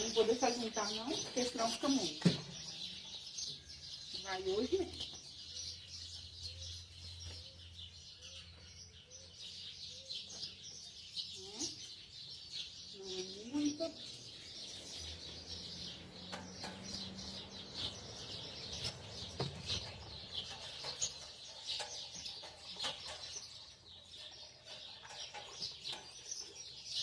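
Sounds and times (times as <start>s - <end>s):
songbirds chirping: 0.0s - 27.0s.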